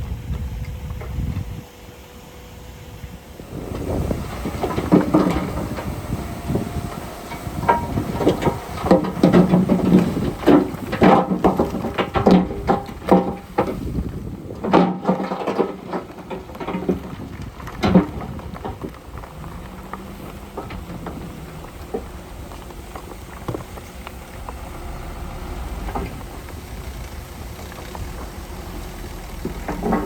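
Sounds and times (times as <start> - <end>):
low engine hum: 0.0 - 30.0
loud clanks and rattles: 3.4 - 30.0.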